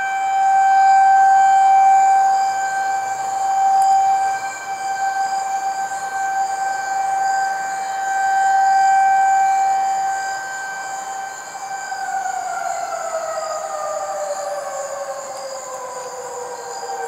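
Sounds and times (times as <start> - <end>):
tornado warning siren wailing: 0.0 - 17.0.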